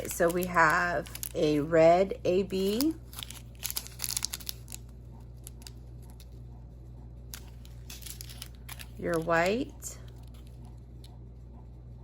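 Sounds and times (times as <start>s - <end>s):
plastic bags crinkling: 0.0s - 1.8s, 2.4s - 6.3s, 7.4s - 10.6s
low steady hum: 0.0s - 12.0s.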